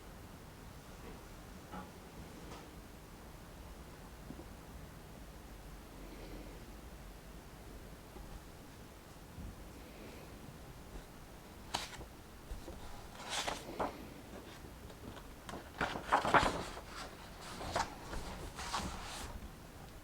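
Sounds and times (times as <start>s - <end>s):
paper rustling: 10.9s - 19.5s.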